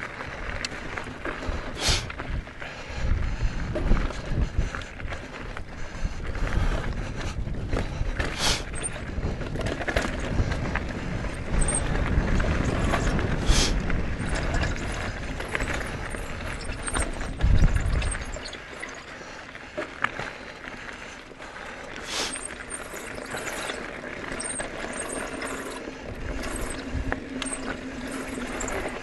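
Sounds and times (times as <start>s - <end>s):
wind rumble: 0.0s - 18.6s, 22.3s - 29.0s
bike rattling: 0.0s - 29.0s
person sniffing: 1.8s - 2.1s, 8.4s - 8.7s, 22.0s - 22.4s
faint high squeaks: 15.5s - 19.1s, 22.2s - 29.0s.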